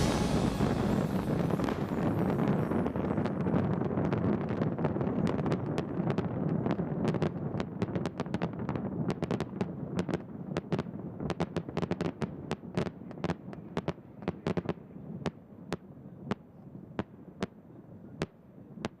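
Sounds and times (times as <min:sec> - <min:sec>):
low rumble: 0:00.0 - 0:03.8
fireworks cracks and bangs: 0:00.0 - 0:14.7.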